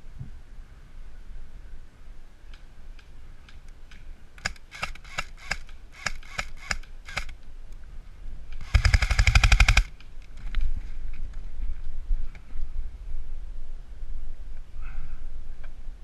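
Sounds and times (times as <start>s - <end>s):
airsoft gun shots: 8.6s - 9.9s.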